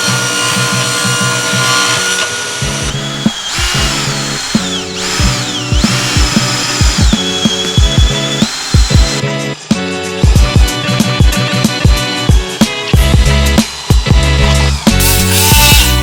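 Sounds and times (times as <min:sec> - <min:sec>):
music with kick drum and bass: 0:05.0 - 0:09.4, 0:10.2 - 0:16.0.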